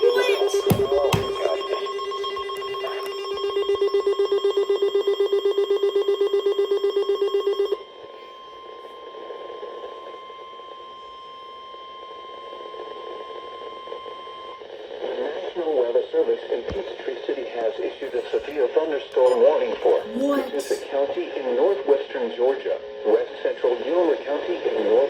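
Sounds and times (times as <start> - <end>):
rapid pulsing alarm beep: 0.0 - 7.8
steady high-pitched alarm tone: 0.0 - 14.5.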